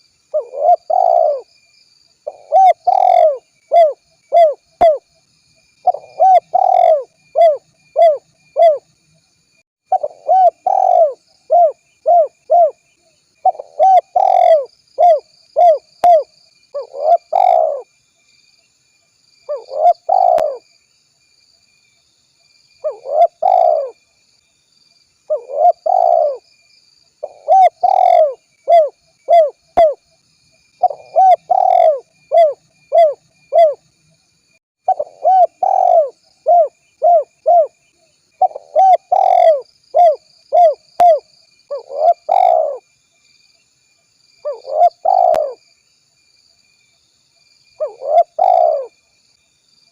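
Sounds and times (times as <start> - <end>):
dove cooing: 0.3 - 1.5, 2.2 - 5.0, 5.8 - 8.8, 9.9 - 12.8, 13.4 - 17.9, 19.5 - 20.6, 22.8 - 24.0, 25.3 - 26.4, 27.2 - 30.0, 30.8 - 33.8, 34.9 - 37.8, 38.4 - 42.8, 44.4 - 45.6, 47.8 - 49.0.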